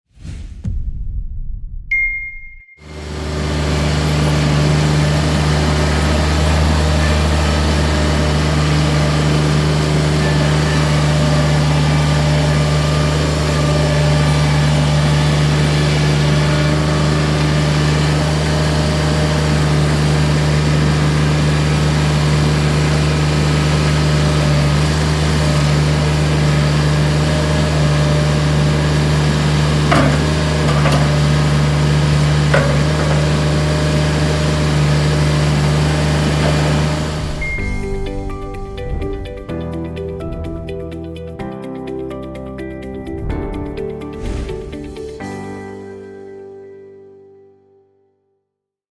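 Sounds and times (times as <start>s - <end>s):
engine idling: 2.9s - 39.6s.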